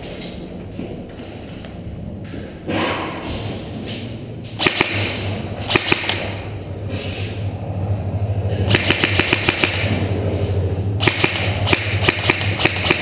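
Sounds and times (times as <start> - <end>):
airsoft guns firing: 4.6 - 6.4, 8.7 - 10.0, 11.0 - 13.0.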